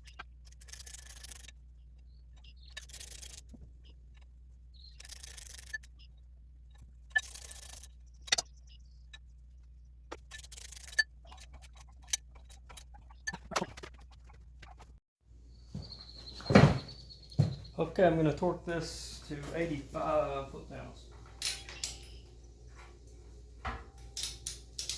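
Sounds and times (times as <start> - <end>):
metallic clinks of tools: 21.3 - 22.3, 24.0 - 24.9.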